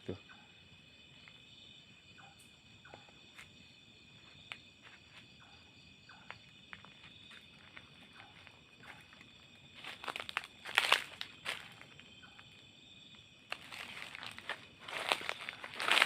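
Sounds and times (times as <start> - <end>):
night insects chirring: 0.0 - 16.0
footsteps on dry ground: 4.2 - 5.3, 6.3 - 12.0, 13.5 - 16.0.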